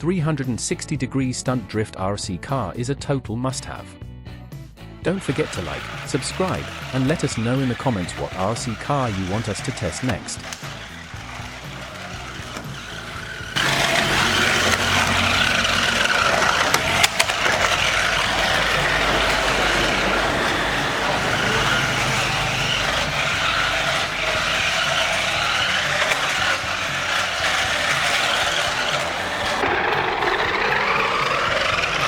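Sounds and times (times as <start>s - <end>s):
sharp clicks: 5.1s - 32.0s
toy car motors whirring: 5.1s - 32.0s.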